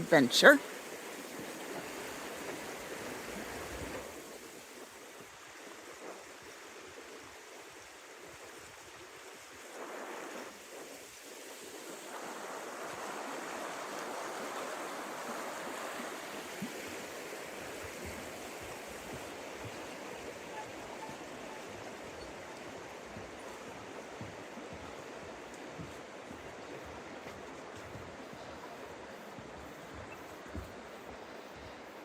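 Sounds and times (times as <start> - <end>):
stream water flowing: 0.0 - 32.0.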